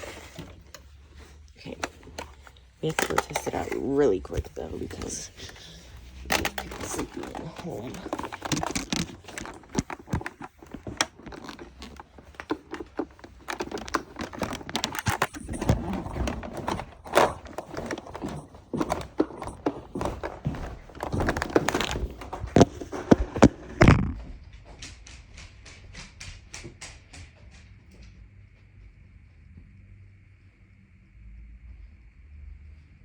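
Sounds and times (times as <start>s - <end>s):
handling knocks and thuds: 0.0s - 24.2s.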